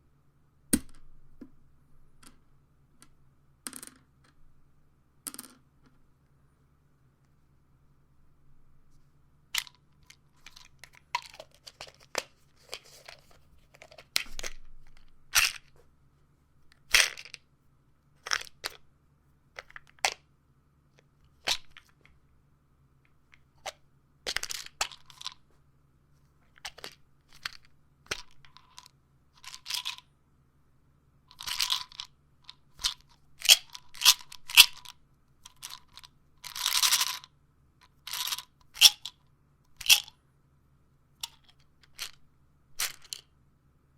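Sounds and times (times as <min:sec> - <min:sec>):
pills rattling in bottle: 0:09.6 - 0:15.7, 0:24.3 - 0:25.4, 0:26.6 - 0:30.0, 0:31.3 - 0:37.3, 0:37.9 - 0:39.1, 0:39.8 - 0:40.1, 0:41.2 - 0:42.2, 0:42.8 - 0:43.3.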